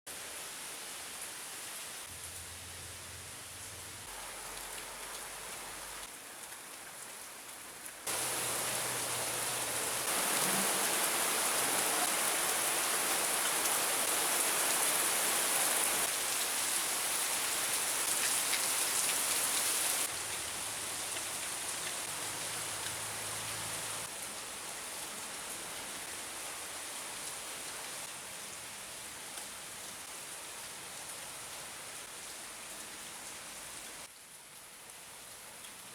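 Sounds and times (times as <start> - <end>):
heavy rain pouring: 8.0 - 28.1.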